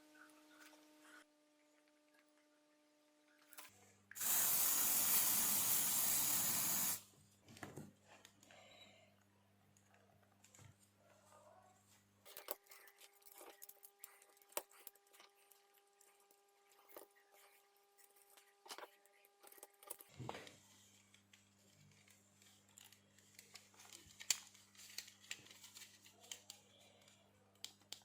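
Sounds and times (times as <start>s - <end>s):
aerosol spray hiss: 4.2s - 7.0s
small parts clicking: 12.3s - 20.1s.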